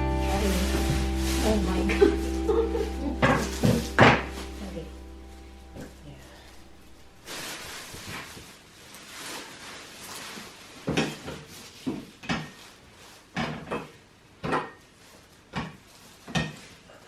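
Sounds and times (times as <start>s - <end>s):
packaging rustling: 0.0s - 11.9s.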